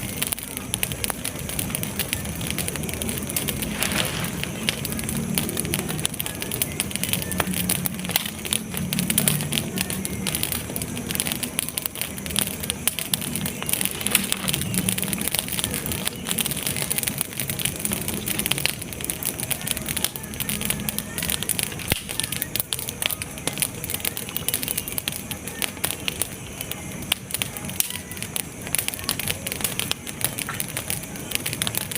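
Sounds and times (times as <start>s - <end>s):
campfire crackling: 0.0s - 31.9s.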